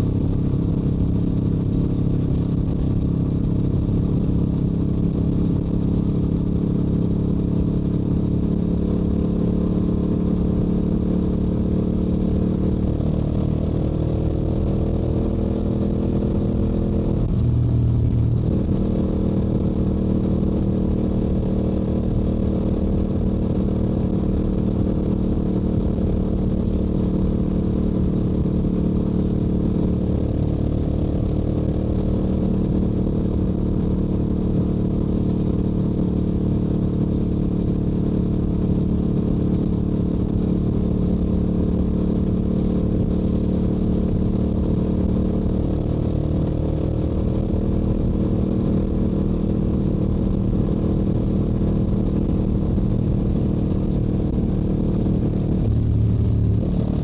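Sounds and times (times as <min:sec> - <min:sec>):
motorcycle engine cruising: 0:00.0 - 0:57.0
wind rush: 0:16.1 - 0:20.2, 0:53.8 - 0:57.0.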